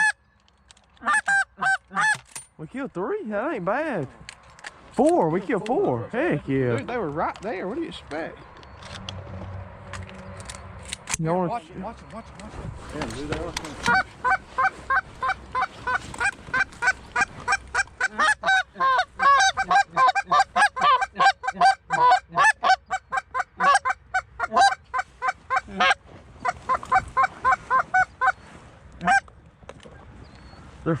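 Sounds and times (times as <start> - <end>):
geese honking and clucking: 0.0 - 0.2, 0.8 - 2.3, 11.5 - 31.0.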